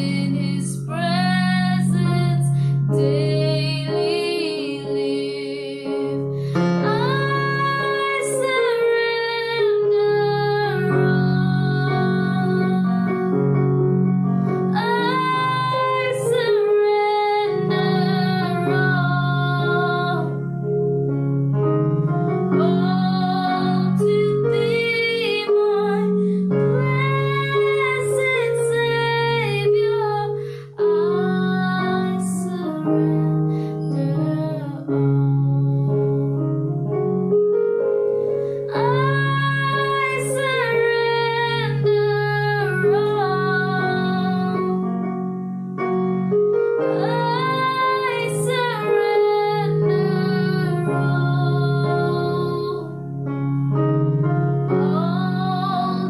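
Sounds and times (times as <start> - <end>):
sustained keyboard chords: 0.0 - 56.0
person singing worship song: 14.5 - 20.4, 38.7 - 44.8, 46.9 - 53.0, 54.8 - 56.0.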